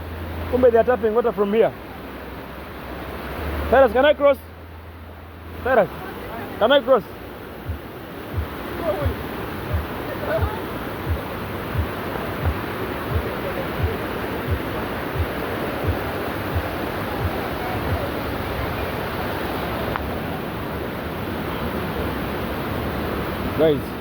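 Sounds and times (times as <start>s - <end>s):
mountain stream rushing over rocks: 0.0s - 24.0s
low thumping footsteps: 7.7s - 18.2s.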